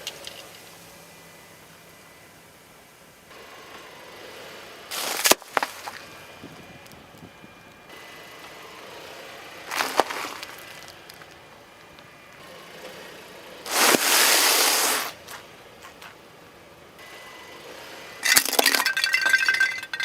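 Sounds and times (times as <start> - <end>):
objects crushed by car: 9.7 - 11.3, 18.2 - 20.0
loud hiss: 13.7 - 15.3.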